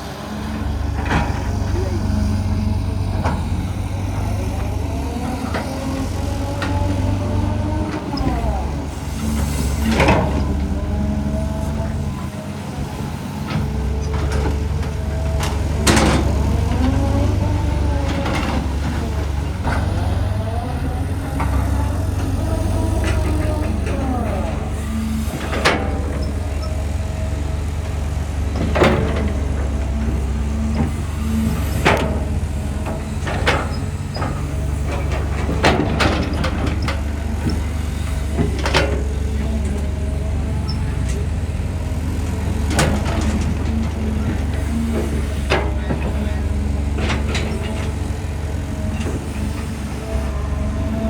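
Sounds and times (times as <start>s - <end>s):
excavator diesel engine running: 0.0s - 51.0s.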